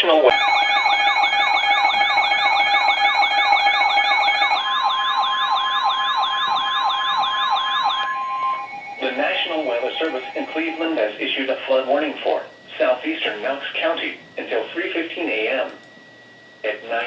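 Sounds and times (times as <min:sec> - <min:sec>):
rapid rising whoop siren: 0:00.3 - 0:11.1
steady warning alarm tone: 0:00.3 - 0:17.0.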